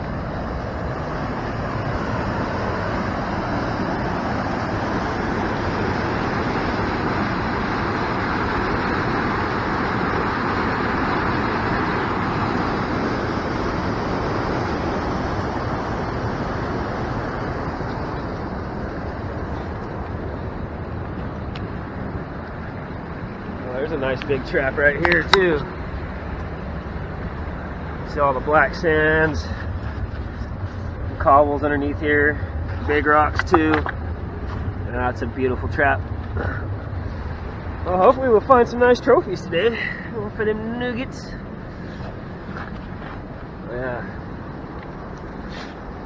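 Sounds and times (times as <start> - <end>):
waterfall and creek rushing: 22.0 - 26.0.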